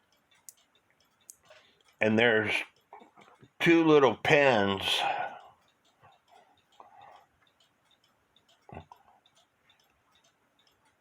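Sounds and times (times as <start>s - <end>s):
faint small clicks: 0.0s - 2.0s.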